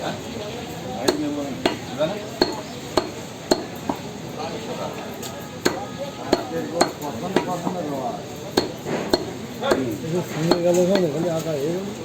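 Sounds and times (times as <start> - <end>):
cleaver chopping meat: 1.0 - 4.1, 5.6 - 11.2.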